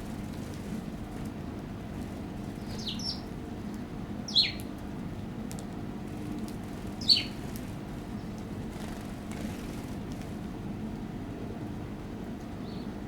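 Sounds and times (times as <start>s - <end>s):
low background hum: 0.0s - 13.0s
sparrows chirping: 2.4s - 4.7s, 6.8s - 9.8s, 12.6s - 13.0s.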